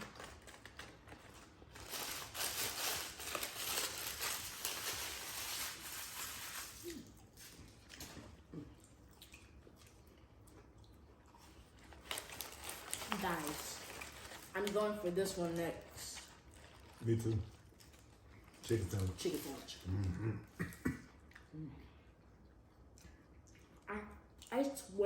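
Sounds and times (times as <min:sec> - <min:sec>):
paper wrappers crinkling: 0:00.0 - 0:08.1, 0:11.7 - 0:19.8
person chewing food: 0:06.8 - 0:12.2, 0:16.3 - 0:19.1, 0:19.8 - 0:24.5.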